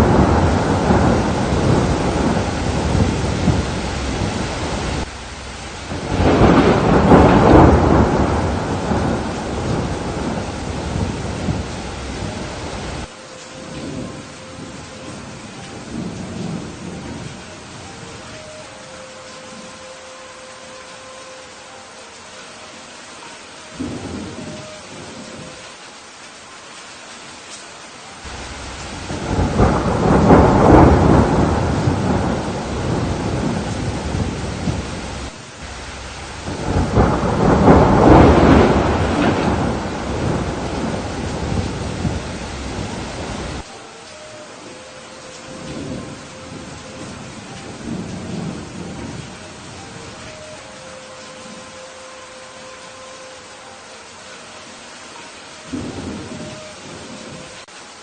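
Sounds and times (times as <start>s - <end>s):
thunder rolling: 0.0s - 18.0s, 23.8s - 25.5s, 28.3s - 43.7s, 45.4s - 50.4s
steady rain: 0.0s - 58.0s.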